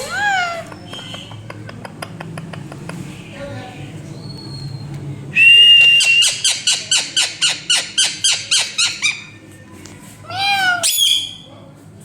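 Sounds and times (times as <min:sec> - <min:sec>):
parrot squawking: 0:06.0 - 0:09.4, 0:10.3 - 0:11.4.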